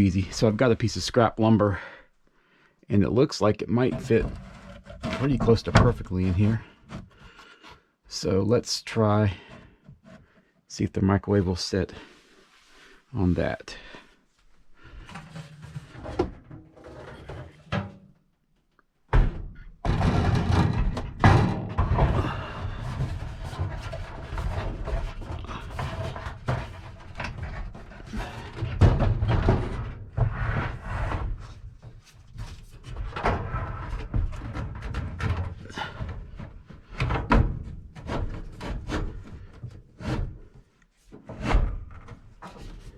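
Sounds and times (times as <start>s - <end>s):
knocks and thumps of wood: 19.1s - 42.9s.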